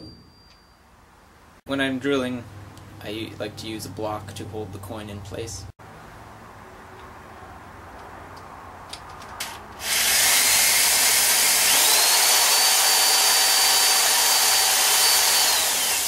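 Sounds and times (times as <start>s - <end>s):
power drill drilling into metal: 9.8s - 16.0s.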